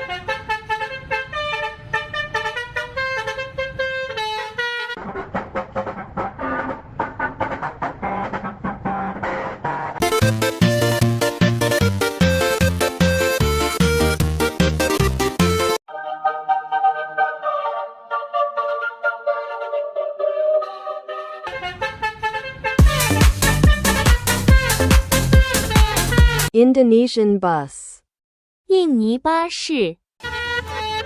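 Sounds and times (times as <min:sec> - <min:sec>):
melodic bus horn: 0:00.0 - 0:05.0, 0:10.0 - 0:26.5, 0:30.2 - 0:31.0
rhythmic musical backing: 0:05.0 - 0:21.6, 0:22.8 - 0:26.5
heavy bass line: 0:10.0 - 0:15.8, 0:22.8 - 0:26.5.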